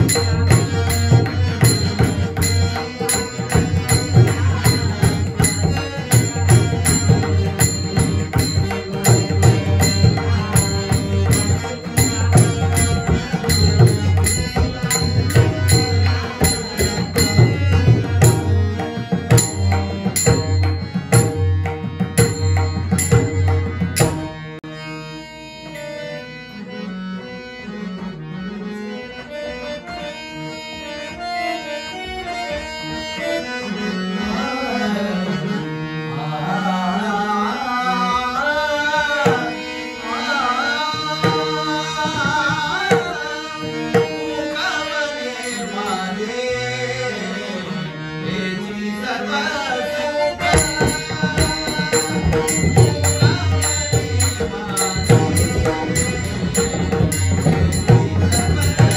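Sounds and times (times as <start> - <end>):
man singing: 0.0 - 24.2, 34.1 - 58.9
hand drum playing fast: 0.0 - 24.4, 50.4 - 58.9
harmonium tones: 0.0 - 58.9.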